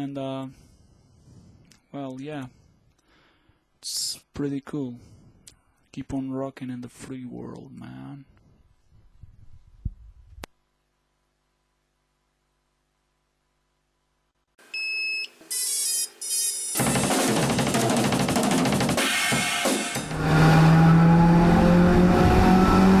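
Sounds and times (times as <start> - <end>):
short electronic tones: 14.8 - 16.8.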